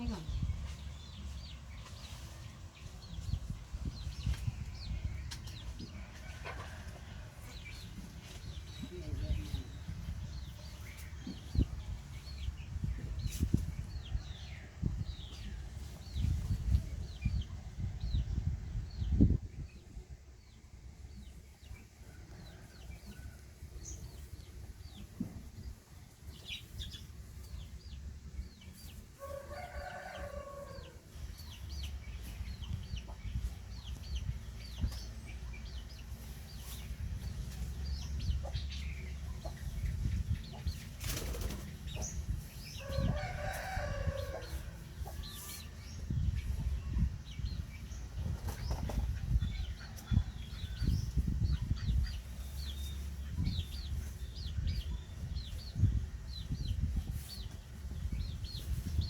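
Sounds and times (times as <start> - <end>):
rooster crowing: 29.2 - 31.0, 42.8 - 45.6.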